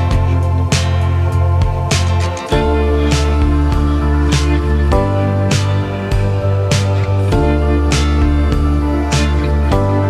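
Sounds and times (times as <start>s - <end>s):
music with held chords and beat: 0.0s - 10.0s.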